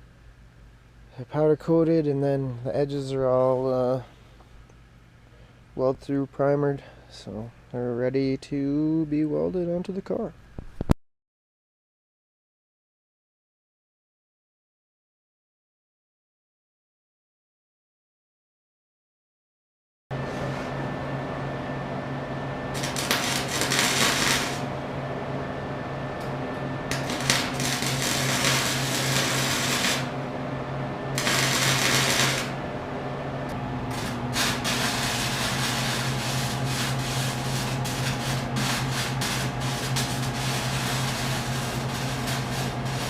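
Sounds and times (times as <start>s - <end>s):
grinder motor hum: 20.2s - 43.0s
abrasive grinding on steel: 26.9s - 30.3s, 31.1s - 32.6s.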